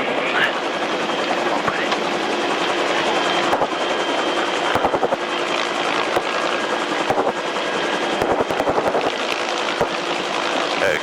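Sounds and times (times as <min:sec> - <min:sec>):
helicopter turbine whine and rotors: 0:00.0 - 0:11.0.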